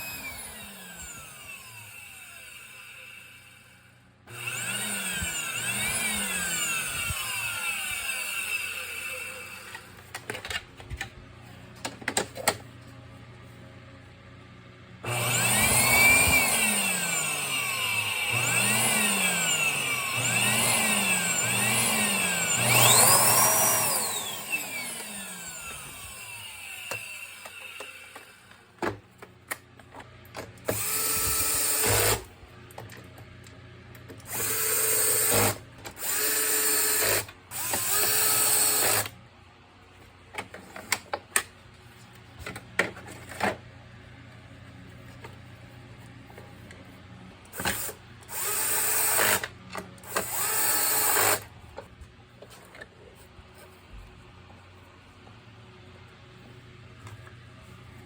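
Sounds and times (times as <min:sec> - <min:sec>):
vacuum cleaner motor running: 0:00.0 - 0:10.1, 0:15.0 - 0:28.7.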